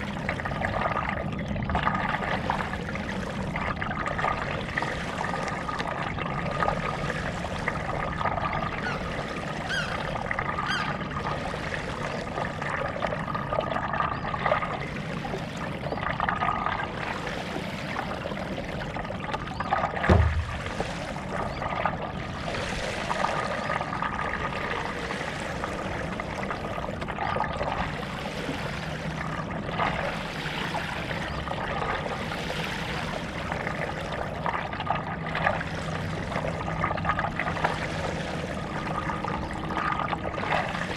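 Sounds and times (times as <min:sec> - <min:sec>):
paddle splashing through water: 0:16.1 - 0:28.9
short low thump: 0:20.1 - 0:21.0.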